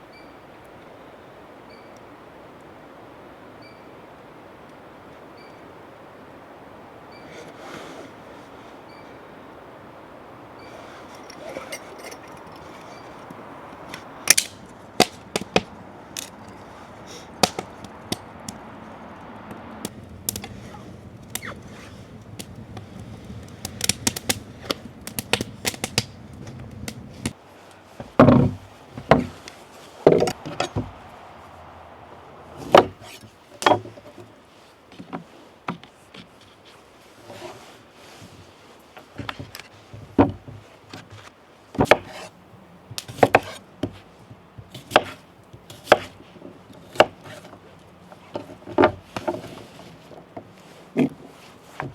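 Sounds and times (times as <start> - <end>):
campfire crackling: 0.0 - 51.9
steady low hiss: 0.0 - 51.9
heavy wooden knocks and thuds: 28.0 - 29.4, 30.0 - 31.9.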